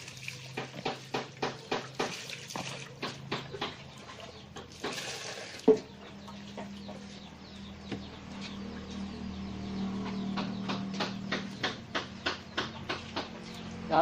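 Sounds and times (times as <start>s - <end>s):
rush like running water: 0.0s - 3.2s.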